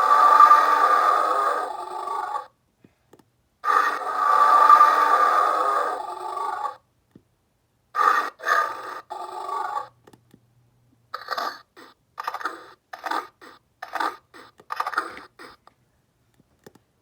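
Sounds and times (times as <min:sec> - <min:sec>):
electronic dinosaur roar: 0:00.0 - 0:02.5, 0:03.6 - 0:06.8, 0:08.0 - 0:09.9, 0:11.2 - 0:15.6.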